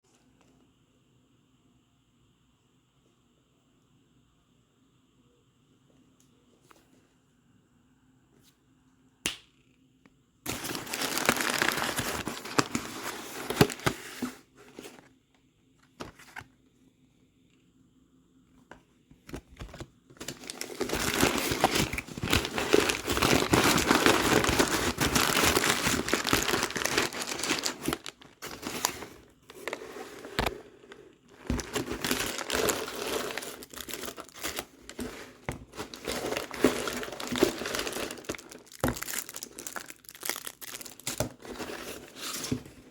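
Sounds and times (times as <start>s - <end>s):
crackly crinkling and crunching: 10.5s - 15.1s, 19.2s - 42.9s.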